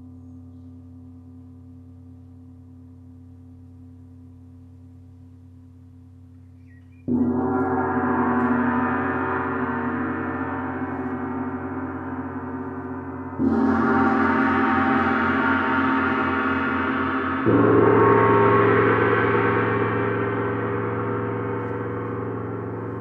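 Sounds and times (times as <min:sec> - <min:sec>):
gong ringing: 0:07.1 - 0:23.0
gong struck: 0:07.1 - 0:23.0.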